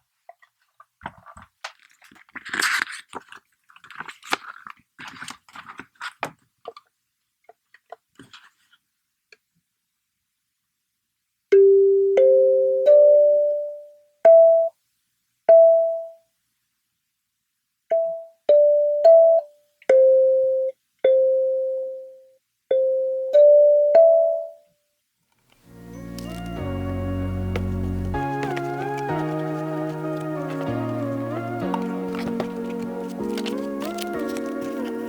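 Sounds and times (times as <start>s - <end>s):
background music with low notes: 25.7s - 35.0s.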